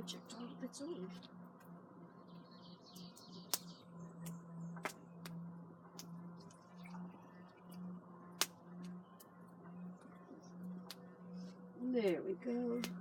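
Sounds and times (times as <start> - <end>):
steady low hum: 0.0 - 13.0
wood fire crackling: 0.0 - 13.0
fire pops: 3.2 - 5.4, 8.4 - 9.3.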